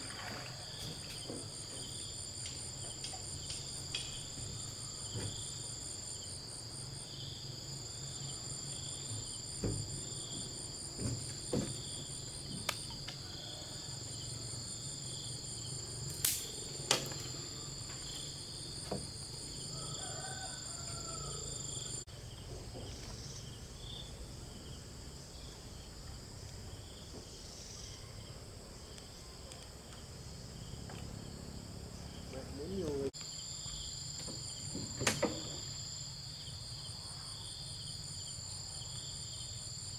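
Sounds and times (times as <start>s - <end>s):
insects chirping: 0.0s - 39.9s.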